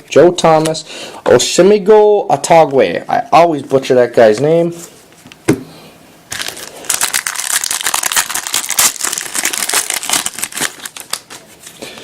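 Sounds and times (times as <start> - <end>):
foil wrapper tearing and crinkling: 6.3 - 11.4.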